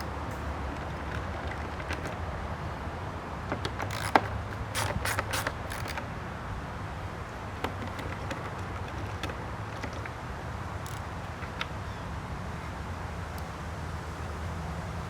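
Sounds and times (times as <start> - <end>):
hand tools clicking on metal: 0.0 - 2.7, 3.5 - 6.1, 7.6 - 11.8.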